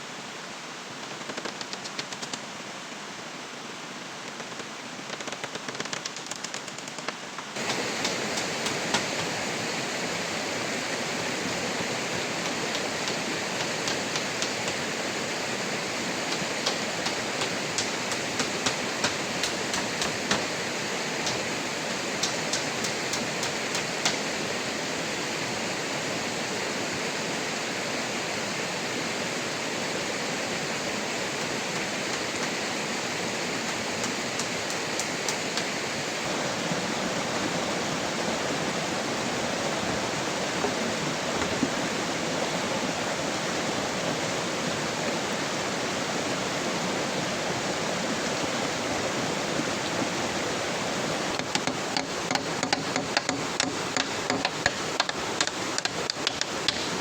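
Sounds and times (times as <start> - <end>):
flowing water: 6.6 - 57.0
heavy rain: 7.6 - 57.0
rapid sharp taps: 16.3 - 20.5.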